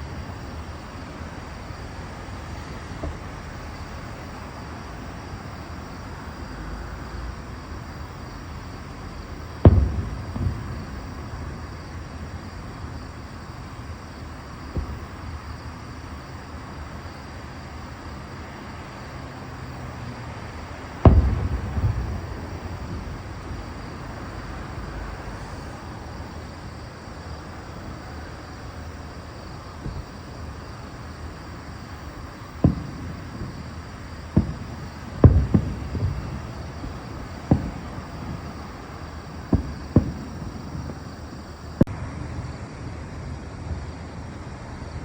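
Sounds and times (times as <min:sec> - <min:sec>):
fireworks booming and banging: 0:00.0 - 0:16.7, 0:20.5 - 0:42.0
steady background rumble: 0:00.0 - 0:18.2, 0:19.6 - 0:45.0.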